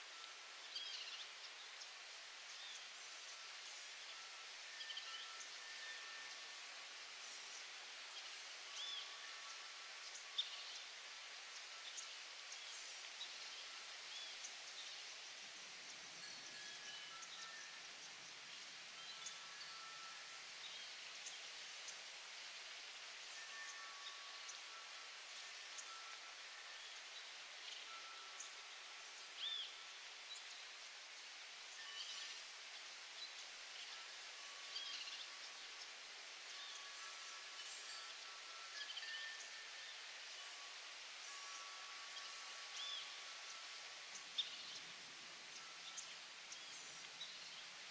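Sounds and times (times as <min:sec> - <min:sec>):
soft steady hiss: 0:00.0 - 0:47.9.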